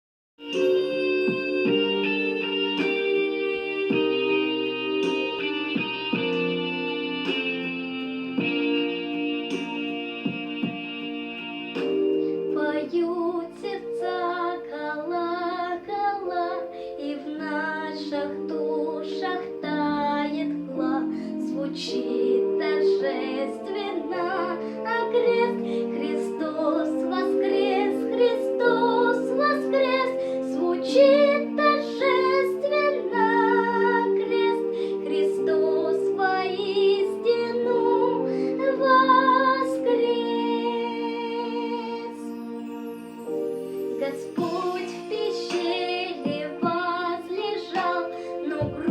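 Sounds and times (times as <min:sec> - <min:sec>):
chordal instrumental accompaniment: 0:00.4 - 0:48.9
woman singing with vibrato: 0:12.4 - 0:42.4, 0:44.0 - 0:48.9.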